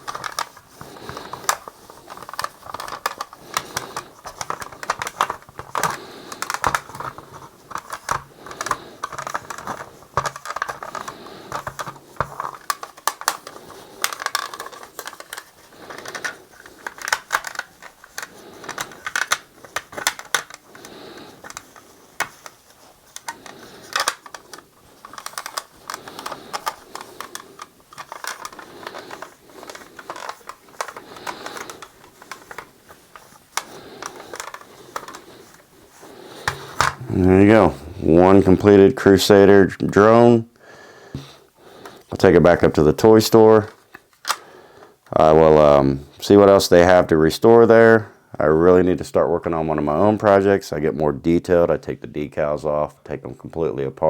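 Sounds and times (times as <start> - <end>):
plastic clicks and taps: 0.0 - 22.6
cloth rubbing on plastic: 0.0 - 39.4.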